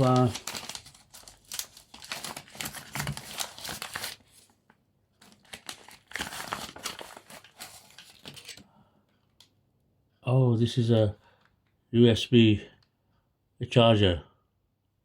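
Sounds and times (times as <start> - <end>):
packaging crinkling and tearing: 0.0 - 4.6, 5.2 - 8.6.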